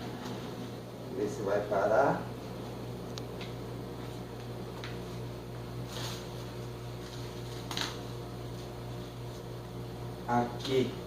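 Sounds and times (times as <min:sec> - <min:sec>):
low electrical hum: 0:00.0 - 0:11.0
rustles of handling decorations: 0:05.9 - 0:09.4.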